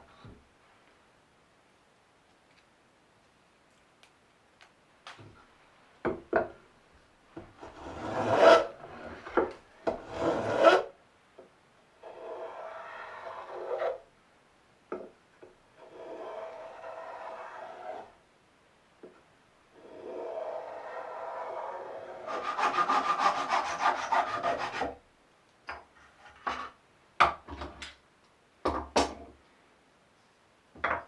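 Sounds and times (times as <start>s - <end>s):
rasp scraping wood: 7.6s - 10.9s, 12.0s - 14.0s, 15.8s - 18.2s, 19.8s - 24.9s.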